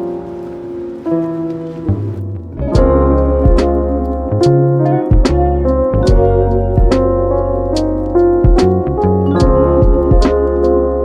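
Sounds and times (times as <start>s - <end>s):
piano chords: 0.0s - 11.0s
steady bass: 2.0s - 11.0s
percussive beat: 2.7s - 10.7s.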